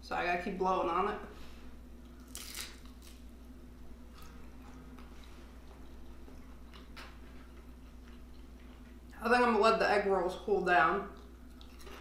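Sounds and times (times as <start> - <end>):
soft chewing: 1.9 - 9.2, 10.9 - 12.0.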